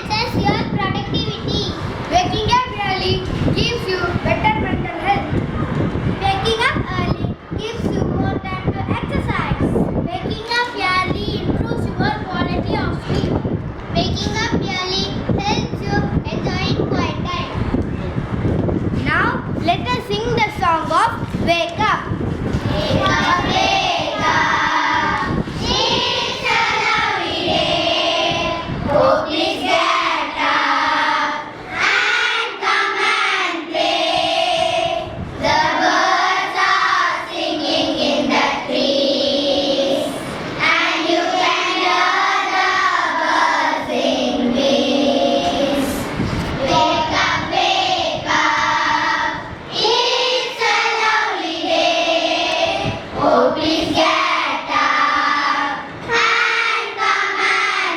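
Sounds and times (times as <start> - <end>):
young children singing: 22.6 - 57.9.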